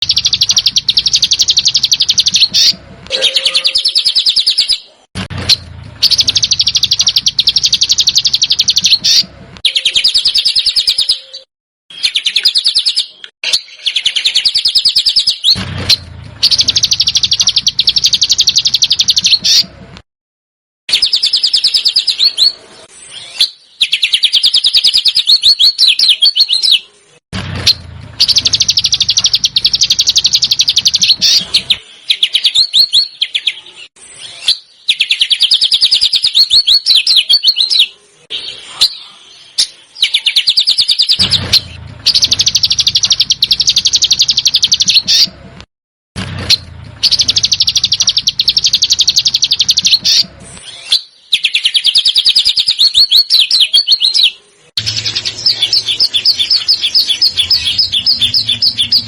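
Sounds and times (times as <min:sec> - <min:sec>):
songbird harsh rapid chatter: 0:28.2 - 0:31.8, 0:54.8 - 0:59.0.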